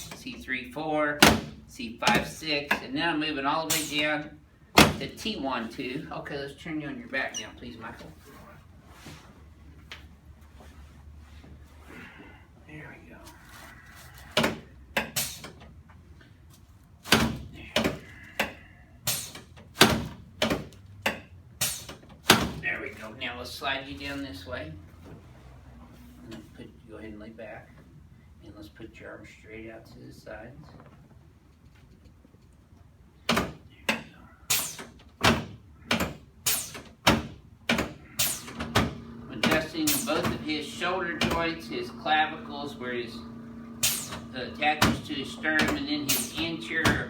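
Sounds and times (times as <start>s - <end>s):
sharp adjusting thumps: 43.2s - 47.0s.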